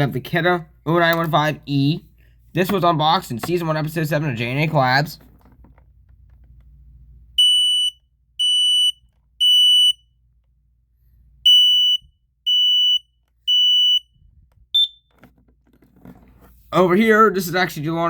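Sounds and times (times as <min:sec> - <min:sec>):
smoke alarm high beeps: 0:07.4 - 0:10.1, 0:11.5 - 0:14.2, 0:14.8 - 0:15.1.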